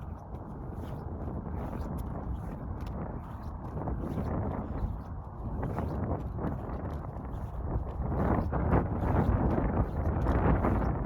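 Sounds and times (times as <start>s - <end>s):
faint footsteps: 0.0s - 11.0s
wind buffeting microphone: 0.0s - 11.0s.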